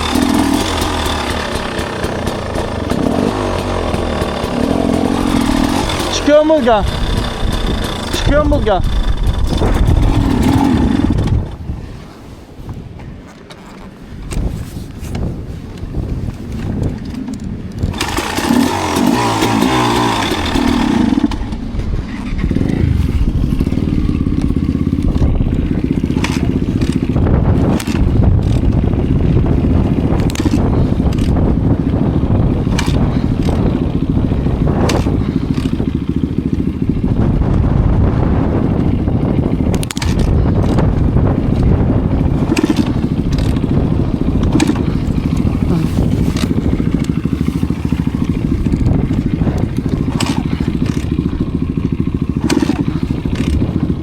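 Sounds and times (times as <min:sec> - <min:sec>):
dirt bike engine running: 0:00.0 - 0:54.0
knocks and clatter from rough ground: 0:12.7 - 0:36.6, 0:39.3 - 0:54.0.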